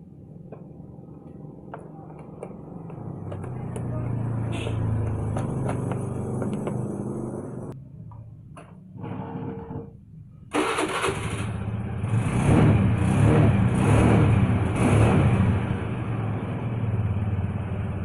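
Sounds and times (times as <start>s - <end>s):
engine starting and revving: 10.5s - 15.8s.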